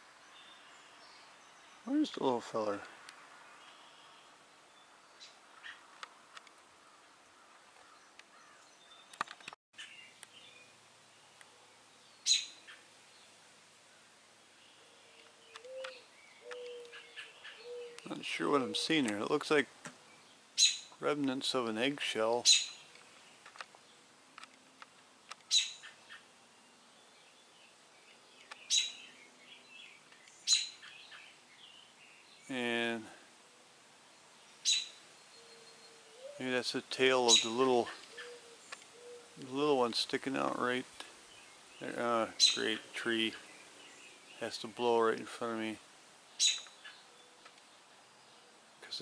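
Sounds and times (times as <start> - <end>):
small birds chirping: 0.0 - 49.0
sharp clicks: 9.1 - 9.6, 15.2 - 17.0, 22.9 - 25.5.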